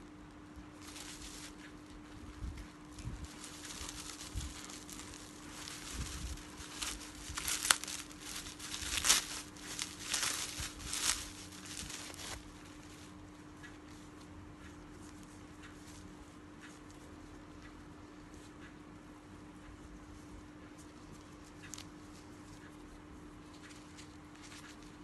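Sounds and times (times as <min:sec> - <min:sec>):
faint steady hum: 0:00.0 - 0:25.0
plastic packaging crinkling: 0:00.7 - 0:13.1.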